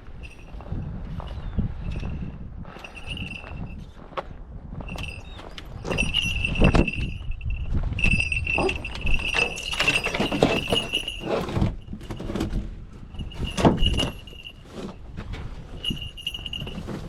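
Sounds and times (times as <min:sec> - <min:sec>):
small bell ringing: 0:00.2 - 0:03.8, 0:04.8 - 0:12.0, 0:13.1 - 0:14.6, 0:15.8 - 0:17.0.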